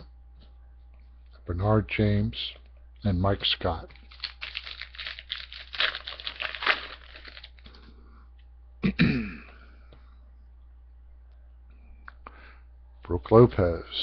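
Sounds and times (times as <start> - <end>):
plastic wrapper tearing and crinkling: 3.9 - 7.7.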